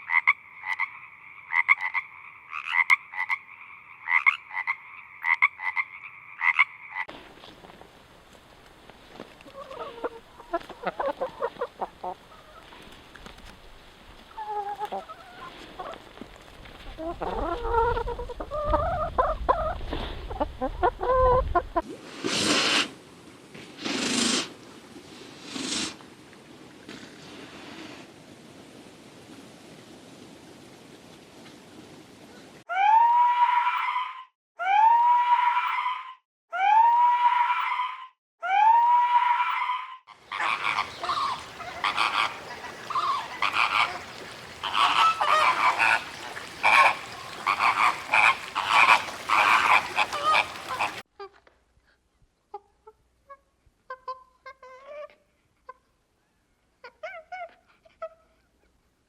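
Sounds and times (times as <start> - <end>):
chorus of overlapping animal calls: 32.7 - 51.0.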